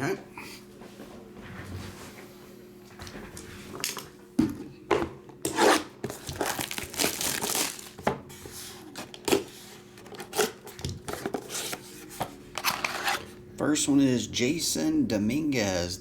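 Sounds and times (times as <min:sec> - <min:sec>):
faint steady hum: 0:00.0 - 0:16.0
wrapper tearing and crinkling: 0:05.6 - 0:08.0.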